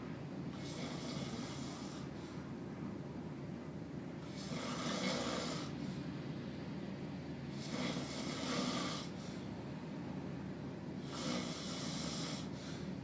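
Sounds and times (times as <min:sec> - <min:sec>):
steady low hum: 0:00.0 - 0:13.0
person snoring: 0:00.6 - 0:02.1, 0:04.2 - 0:05.7, 0:07.6 - 0:09.2, 0:11.0 - 0:12.6.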